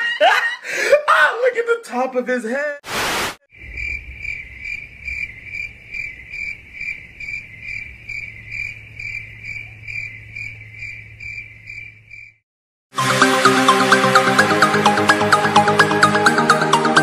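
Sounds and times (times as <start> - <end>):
crickets chirping: 3.5 - 12.4.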